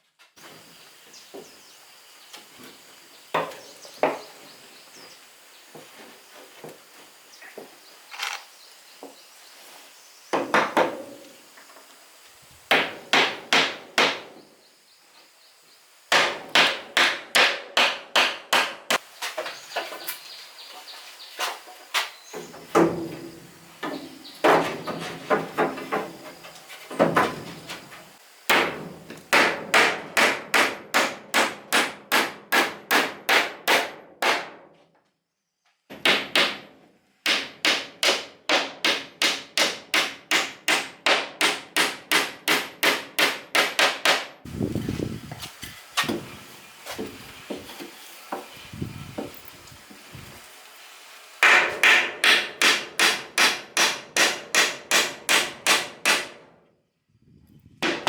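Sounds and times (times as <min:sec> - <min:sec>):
hammer striking wood: 0:10.3 - 0:11.2, 0:12.7 - 0:14.4, 0:16.1 - 0:19.0, 0:28.5 - 0:34.6, 0:35.9 - 0:44.4, 0:51.4 - 0:56.4.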